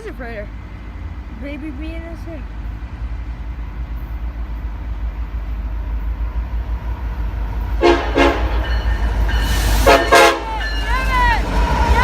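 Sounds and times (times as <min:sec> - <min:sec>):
locomotive air horn blasts: 0:07.8 - 0:08.7, 0:09.7 - 0:10.6.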